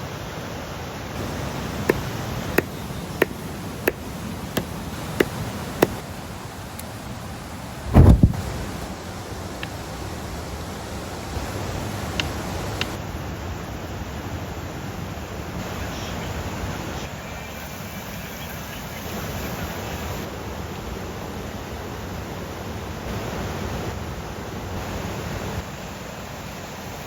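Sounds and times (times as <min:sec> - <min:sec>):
sharp knocks: 0:01.8 - 0:06.0
loud thump: 0:07.9 - 0:08.9.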